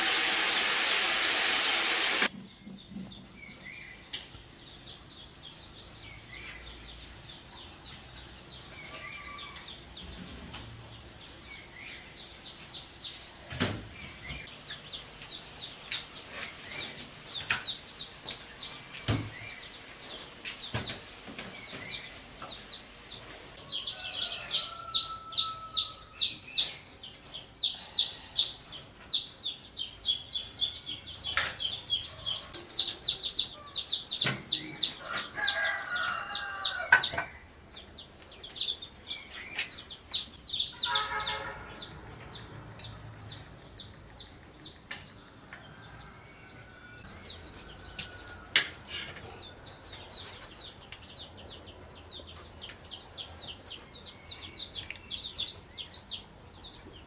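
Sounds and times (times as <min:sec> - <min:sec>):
rapid high chirps: 0:00.0 - 0:02.3
chickens clucking and calling: 0:20.2 - 0:41.4.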